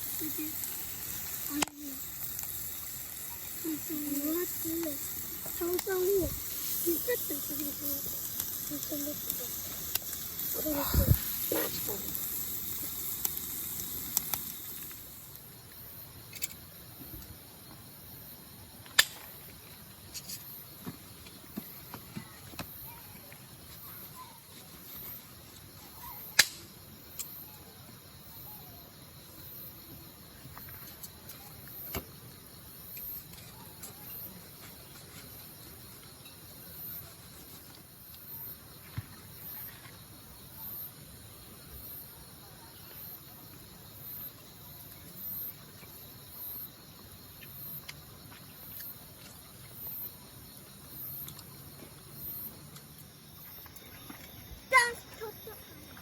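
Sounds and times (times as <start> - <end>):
hiss: 0.0 - 17.4
crickets chirping: 0.0 - 56.0.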